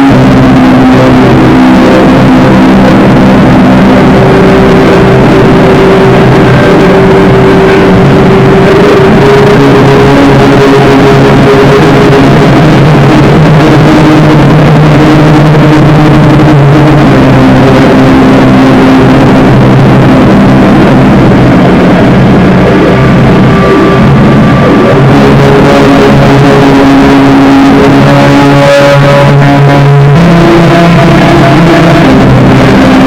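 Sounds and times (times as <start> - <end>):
loud droning noise metal music: 0.0 - 33.0.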